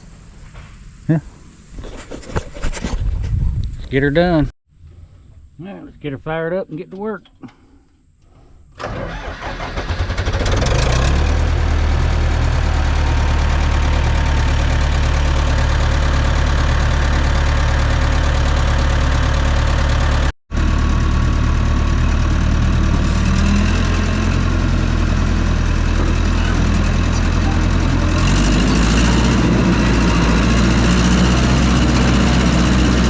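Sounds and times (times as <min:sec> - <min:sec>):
diesel engine idling: 0:08.8 - 0:33.0.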